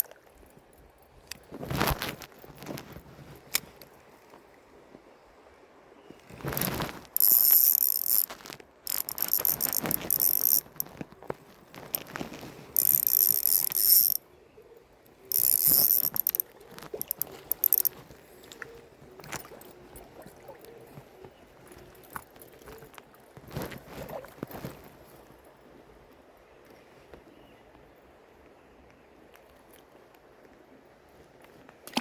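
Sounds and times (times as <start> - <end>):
fishing reel gears whirring: 6.6 - 10.8, 12.8 - 14.2, 15.3 - 17.9.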